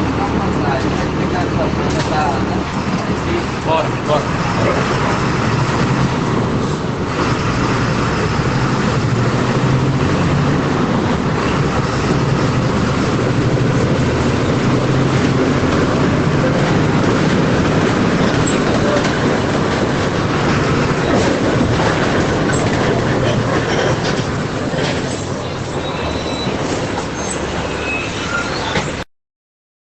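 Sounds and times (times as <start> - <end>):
bus diesel engine running: 0.0 - 29.0
road noise: 0.0 - 29.1.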